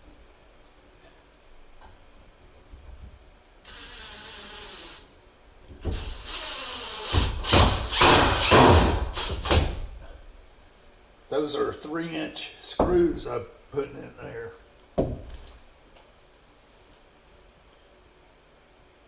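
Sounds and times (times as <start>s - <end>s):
power drill driving screws into wood: 3.6s - 5.1s, 5.9s - 9.9s.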